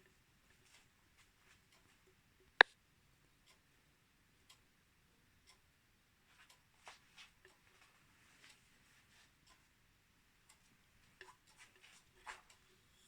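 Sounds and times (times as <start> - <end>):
soft rustling clicks: 0.0 - 2.8, 6.2 - 9.8, 10.4 - 13.0
faint ticking: 0.0 - 13.0.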